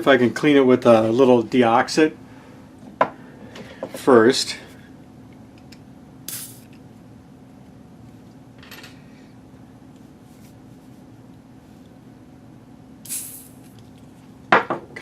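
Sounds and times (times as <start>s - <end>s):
steady low hum: 0.0s - 15.0s
contact cleaner spray hissing: 6.3s - 6.7s, 13.0s - 13.6s.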